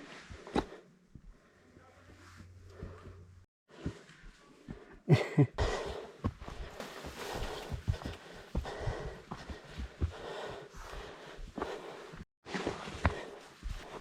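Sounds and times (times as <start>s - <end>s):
footsteps on rocky trail: 5.6s - 14.0s.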